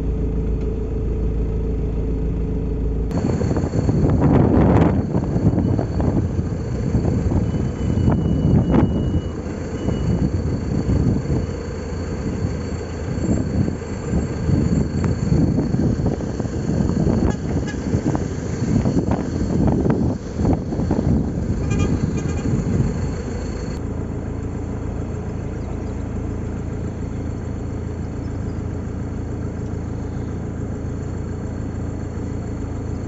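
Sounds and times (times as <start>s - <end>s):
engine running: 0.0s - 33.0s
rough gusty noise: 3.1s - 8.8s, 13.4s - 23.8s.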